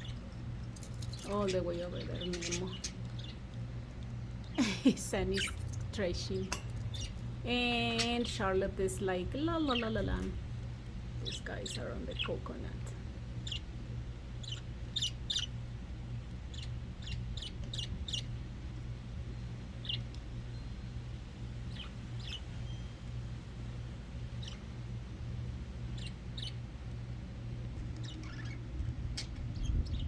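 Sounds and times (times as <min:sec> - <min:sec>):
steady low hum: 0:00.0 - 0:30.0
budgerigars chirping: 0:01.0 - 0:03.6, 0:04.4 - 0:10.4, 0:11.2 - 0:13.8, 0:14.4 - 0:15.6, 0:16.4 - 0:18.4, 0:19.8 - 0:20.6, 0:21.7 - 0:23.0, 0:24.3 - 0:24.8, 0:25.9 - 0:26.7, 0:28.0 - 0:28.6.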